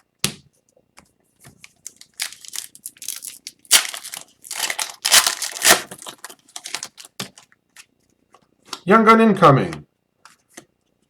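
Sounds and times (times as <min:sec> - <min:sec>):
foil wrapper crinkling: 0:01.6 - 0:07.4.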